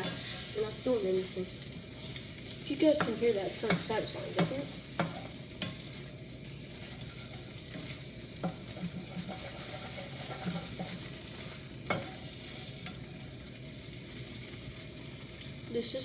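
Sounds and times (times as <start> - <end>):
utensil scraping a pan: 0.0 - 1.0, 1.6 - 13.4
eggs sizzling in a frying pan: 0.0 - 16.0
utensil knocking on a pan: 3.0 - 5.8.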